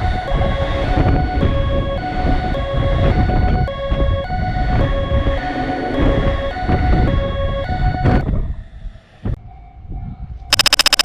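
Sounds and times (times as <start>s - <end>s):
low train rumble: 0.0s - 9.4s
single click: 10.6s - 11.0s.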